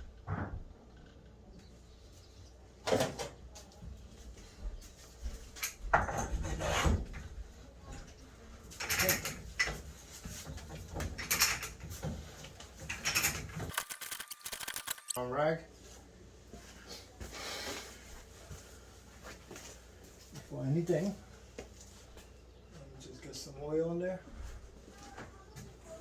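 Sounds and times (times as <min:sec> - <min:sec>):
pipe-threading tool scraping and clunking: 0:06.0 - 0:07.3.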